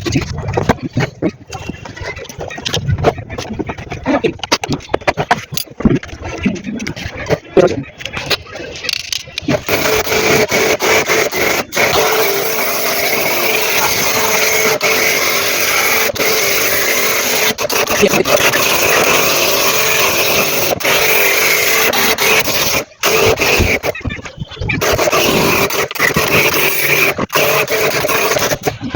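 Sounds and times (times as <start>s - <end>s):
pressure washer spraying water: 9.6s - 24.0s, 24.8s - 28.8s.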